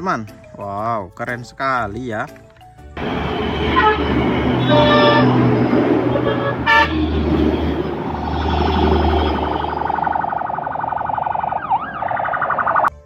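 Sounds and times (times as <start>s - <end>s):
toy truck electronic horn honks: 3.0s - 9.8s
steady buzzing horn tone: 3.0s - 10.4s.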